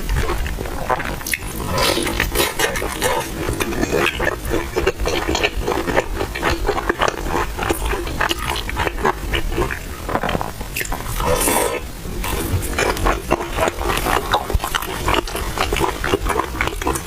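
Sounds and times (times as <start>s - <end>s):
person chewing with mouth smacks: 0.0s - 17.0s.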